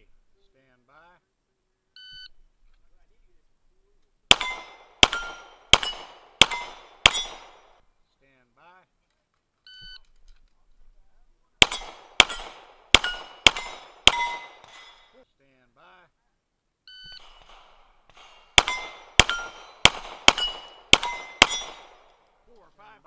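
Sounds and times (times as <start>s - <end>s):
ring of struck steel plate: 4.3s - 7.6s, 11.6s - 15.2s, 17.2s - 22.0s
pistol shots: 4.3s - 7.8s, 11.6s - 15.1s, 17.2s - 22.3s.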